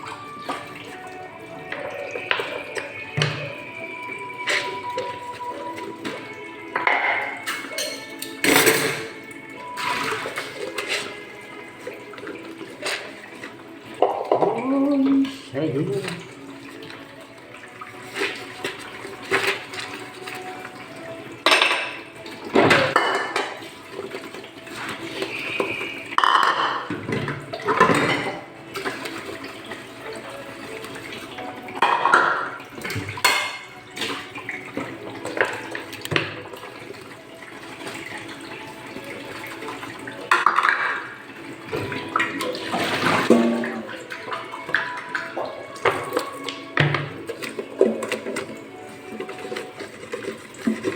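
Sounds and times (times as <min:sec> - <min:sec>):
running water: 0:00.0 - 0:50.9
plates and cutlery clinking: 0:04.4 - 0:11.3, 0:21.4 - 0:37.0, 0:40.2 - 0:50.9.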